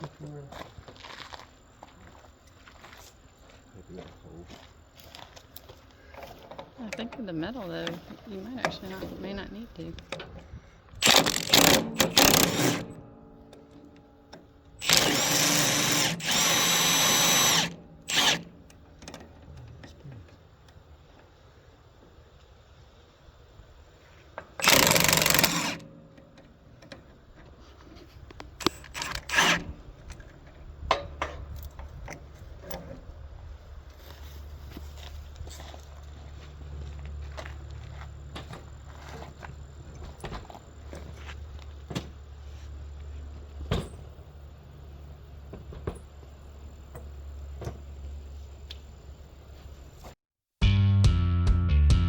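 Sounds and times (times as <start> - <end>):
power tool burst: 11.0 - 13.1, 14.8 - 18.6, 24.6 - 26.0, 28.6 - 29.7.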